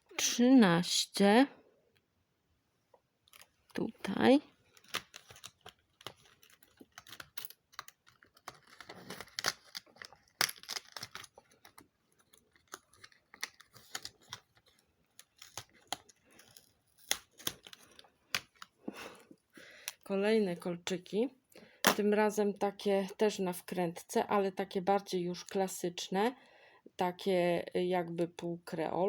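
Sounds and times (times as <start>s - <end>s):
cardboard and packaging clicks and rustles: 4.6s - 18.8s.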